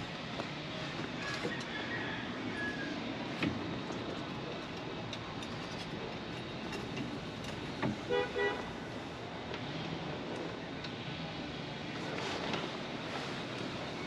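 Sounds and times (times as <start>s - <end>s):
steady background noise: 0.0s - 14.0s
vehicle horn toots: 8.1s - 8.7s.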